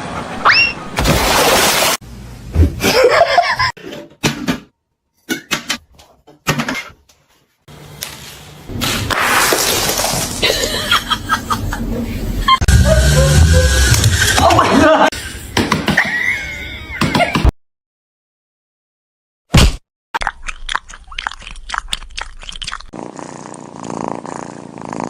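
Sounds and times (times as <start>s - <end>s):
people laughing: 10.4s - 15.1s.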